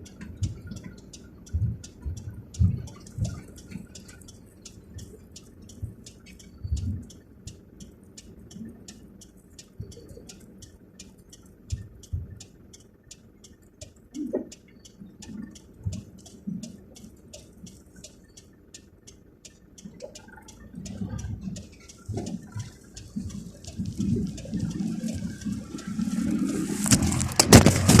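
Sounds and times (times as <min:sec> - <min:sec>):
fast ticking: 0:00.0 - 0:28.0
storm water rushing against vehicle: 0:20.7 - 0:28.0.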